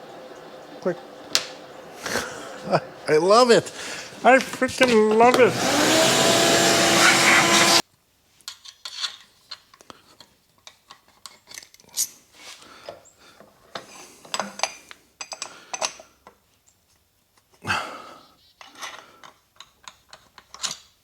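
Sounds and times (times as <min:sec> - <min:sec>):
milling machine whirring: 0:00.0 - 0:07.8.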